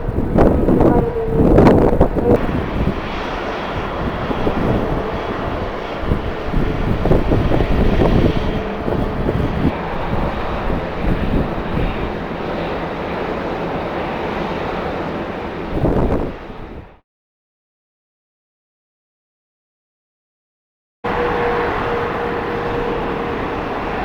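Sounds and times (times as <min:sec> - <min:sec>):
jet engines running: 0:00.0 - 0:17.0, 0:21.1 - 0:24.0
wind buffeting microphone: 0:00.0 - 0:17.0.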